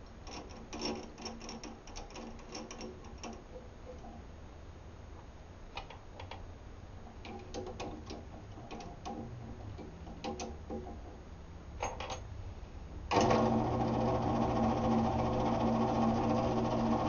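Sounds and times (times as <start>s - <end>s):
drill press motor running: 13.1s - 17.0s.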